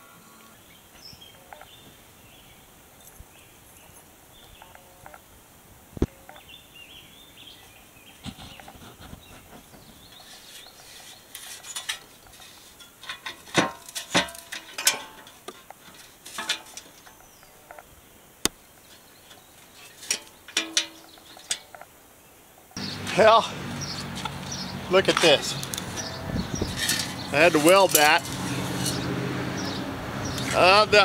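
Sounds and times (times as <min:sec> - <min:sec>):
metal tools clinking and knocking: 0:10.9 - 0:17.2, 0:19.3 - 0:21.8, 0:25.1 - 0:29.1.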